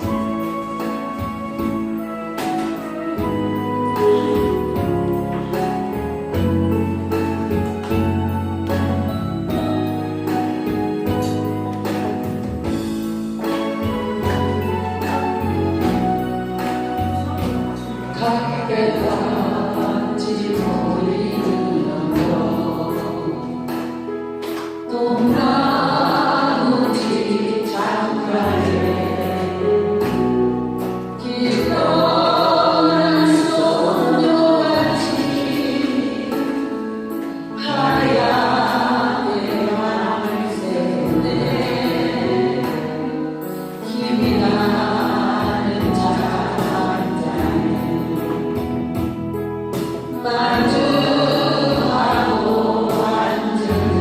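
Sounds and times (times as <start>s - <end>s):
backing band playing: 0.0s - 54.0s
group of voices singing: 16.9s - 24.0s, 24.9s - 30.4s, 31.2s - 49.2s, 50.1s - 54.0s.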